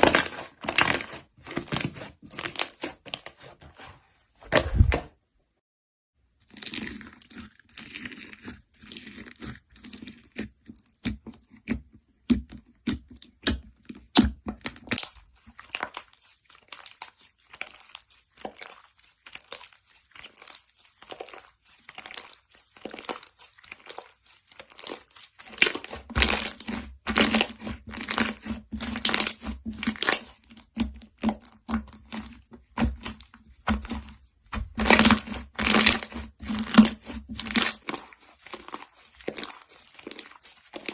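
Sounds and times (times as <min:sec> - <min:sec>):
slime crackling and popping: 0:13.4 - 0:40.9.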